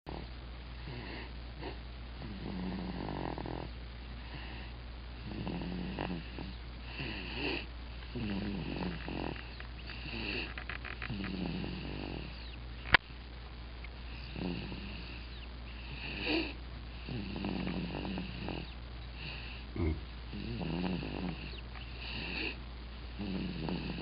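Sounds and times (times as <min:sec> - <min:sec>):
baby snoring: 0:00.9 - 0:03.7, 0:05.2 - 0:12.6, 0:14.2 - 0:22.6, 0:23.2 - 0:24.0
low hum: 0:18.6 - 0:20.6.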